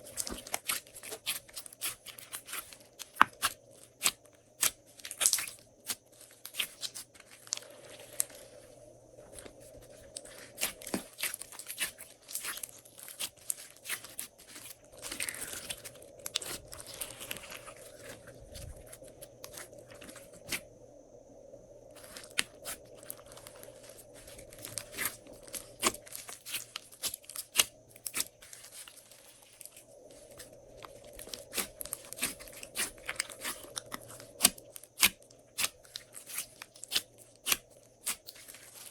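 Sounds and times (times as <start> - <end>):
slime crackling and clicking: 0.2 - 8.4.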